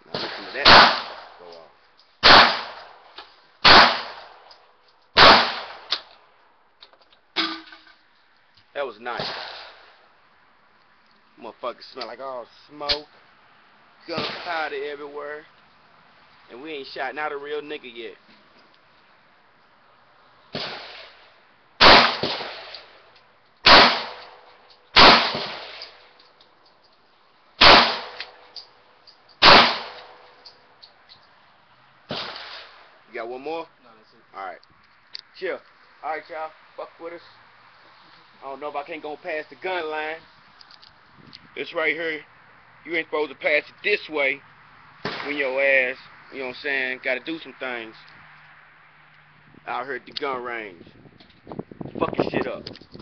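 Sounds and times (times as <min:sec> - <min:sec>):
sharp crack: 0:00.0 - 0:06.3, 0:09.1 - 0:10.0, 0:12.8 - 0:13.1, 0:14.1 - 0:15.1, 0:20.5 - 0:26.9, 0:27.6 - 0:31.3, 0:32.0 - 0:33.6, 0:45.0 - 0:45.9
gunshots with echo: 0:00.1 - 0:01.4, 0:02.2 - 0:02.9, 0:03.6 - 0:04.4, 0:05.2 - 0:05.9, 0:14.2 - 0:14.7, 0:21.8 - 0:22.7, 0:23.6 - 0:24.4, 0:25.0 - 0:25.9, 0:27.6 - 0:28.3, 0:29.4 - 0:30.2.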